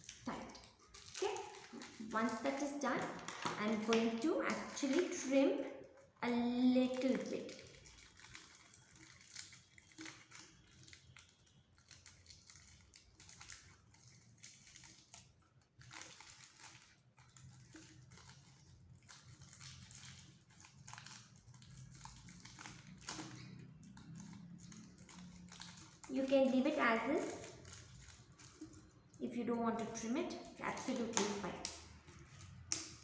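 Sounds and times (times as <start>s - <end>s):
gift wrap crinkling and snipping: 0.0s - 33.0s.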